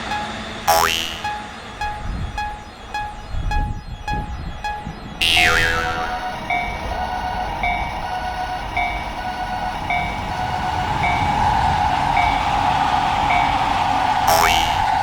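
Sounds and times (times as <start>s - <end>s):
level-crossing warning bell: 0.0s - 15.0s
train running past: 0.0s - 15.0s.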